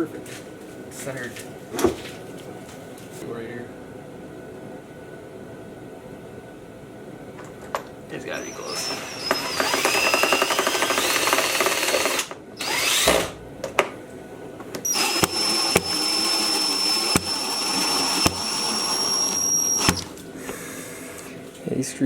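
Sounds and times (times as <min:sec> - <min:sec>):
cordless drill whining: 0:08.4 - 0:13.4, 0:14.8 - 0:20.6.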